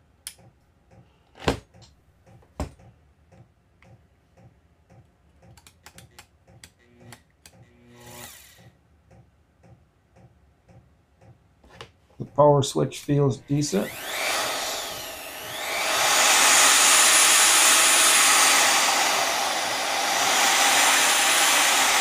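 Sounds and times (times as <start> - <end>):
router controls clicking: 13.6 - 22.0.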